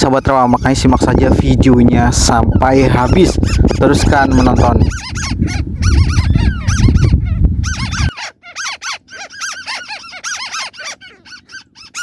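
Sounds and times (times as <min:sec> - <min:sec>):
crakes chattering calls: 0:00.0 - 0:12.0
low rumble: 0:00.6 - 0:08.1.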